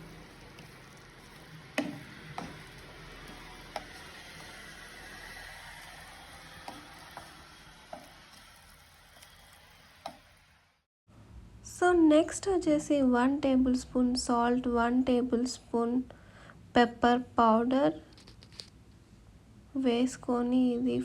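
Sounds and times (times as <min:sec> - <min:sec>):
paste frying in a pan: 0:00.0 - 0:10.8
spoon knocking against pan: 0:01.8 - 0:04.1.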